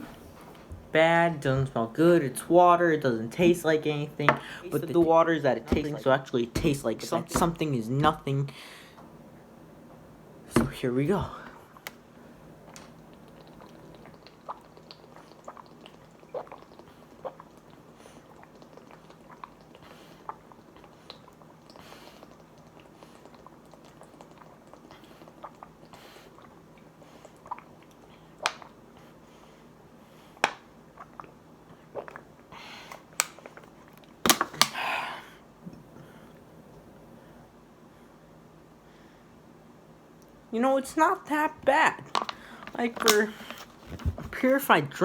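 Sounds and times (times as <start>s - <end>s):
swallowing: 31.0s - 33.0s.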